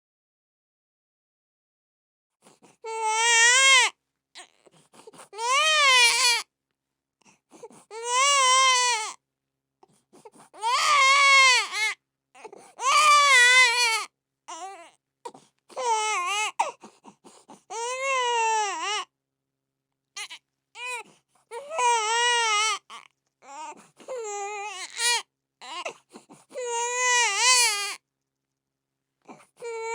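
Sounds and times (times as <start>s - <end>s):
infant gasping for breath: 2.4s - 2.9s, 4.4s - 5.4s, 7.2s - 8.0s, 9.8s - 10.6s, 12.4s - 12.8s, 14.5s - 15.9s, 16.6s - 17.8s, 23.5s - 24.2s, 25.8s - 26.7s, 29.2s - 29.6s
infant crying: 2.8s - 4.7s, 5.3s - 6.4s, 7.9s - 9.2s, 10.5s - 15.0s, 15.7s - 16.9s, 17.7s - 19.1s, 20.2s - 28.0s, 29.3s - 29.9s.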